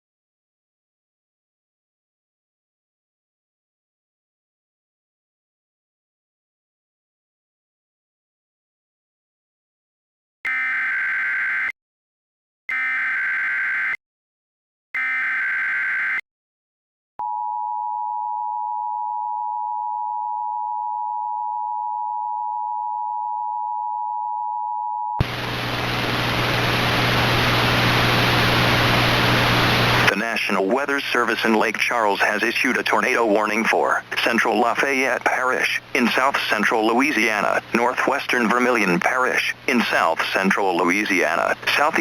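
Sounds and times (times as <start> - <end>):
low hum: 25.2 - 30.1
loud static hiss: 25.2 - 42.0.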